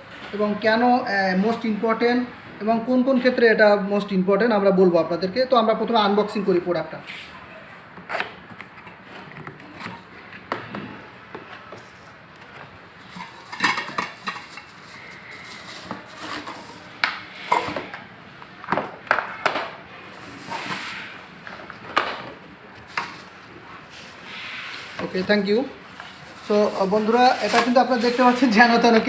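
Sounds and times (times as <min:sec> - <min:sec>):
packaging rustling and scraping: 0:08.0 - 0:18.0, 0:20.0 - 0:29.0
kettle parts knocking and clattering: 0:12.5 - 0:16.8.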